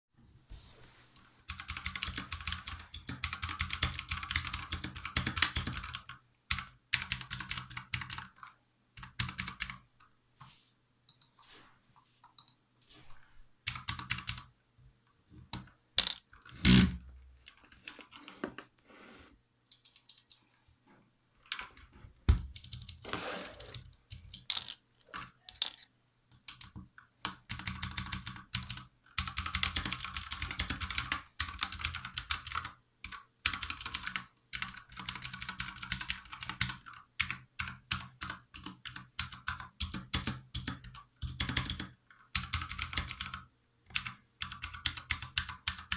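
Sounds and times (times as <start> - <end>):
mechanical keyboard typing: 1.5 - 9.8, 13.7 - 14.5, 19.7 - 20.4, 22.5 - 45.9.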